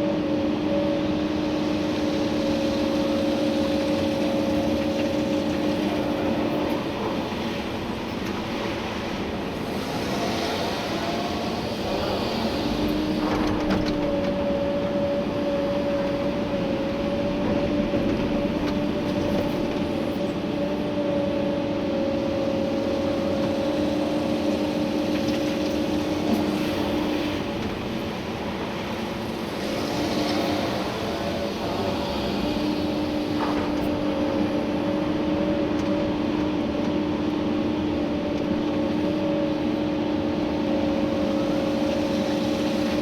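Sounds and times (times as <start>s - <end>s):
excavator engine rumbling: 0.0s - 43.0s
two-tone hydraulic whine: 0.0s - 43.0s.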